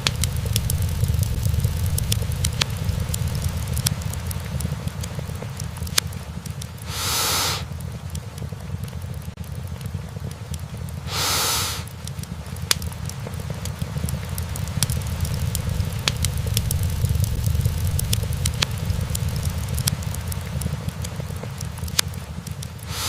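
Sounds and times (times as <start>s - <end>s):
fire crackling and popping: 0.0s - 23.0s
low fire rumble: 0.0s - 23.0s
loud hiss: 6.8s - 7.7s, 11.1s - 11.9s.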